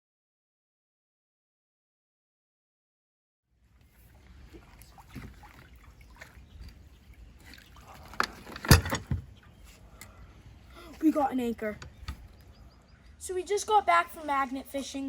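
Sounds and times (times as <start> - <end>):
metal knocks and clunks: 8.2 - 9.4.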